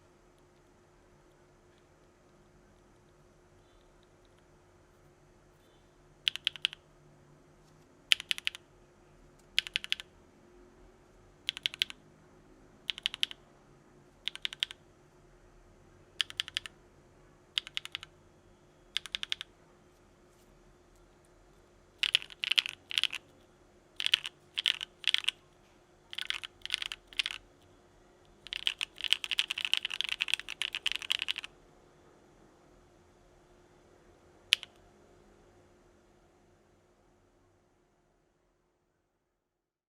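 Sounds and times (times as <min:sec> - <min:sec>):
mechanical keyboard keystrokes: 0:06.3 - 0:06.8, 0:08.1 - 0:08.6, 0:09.6 - 0:10.1, 0:11.4 - 0:12.0, 0:12.9 - 0:13.4, 0:14.2 - 0:14.8, 0:16.2 - 0:16.7, 0:17.6 - 0:18.1, 0:19.0 - 0:19.5, 0:22.0 - 0:23.2, 0:24.0 - 0:25.4, 0:26.1 - 0:27.4, 0:28.4 - 0:31.5, 0:34.5 - 0:34.8.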